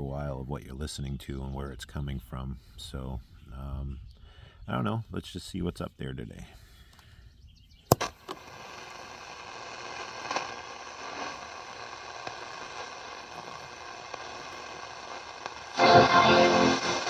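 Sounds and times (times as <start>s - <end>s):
faint steady tones: 7.9s - 17.0s
shortwave radio static: 8.0s - 17.0s.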